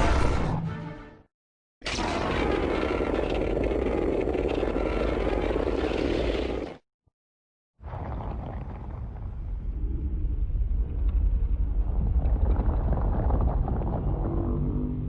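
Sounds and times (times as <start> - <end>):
deep rumbling monster sound: 7.8 - 15.0.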